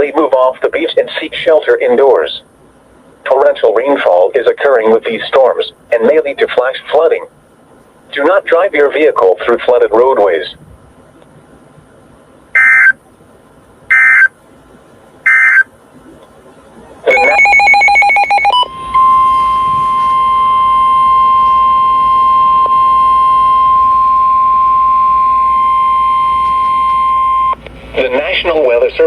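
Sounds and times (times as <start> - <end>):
steady warning alarm tone: 12.6 - 13.0, 13.9 - 14.3, 15.3 - 15.7, 17.1 - 29.0.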